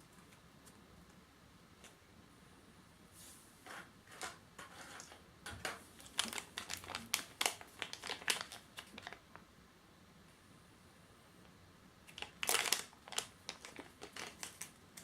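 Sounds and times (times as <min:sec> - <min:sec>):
plastic packaging crinkling: 0:06.0 - 0:09.4, 0:12.1 - 0:15.0.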